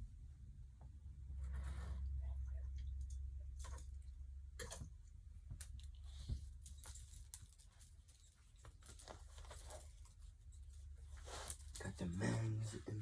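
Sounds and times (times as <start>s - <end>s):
low steady hum: 0.0s - 13.0s
clothing rustling: 6.0s - 13.0s.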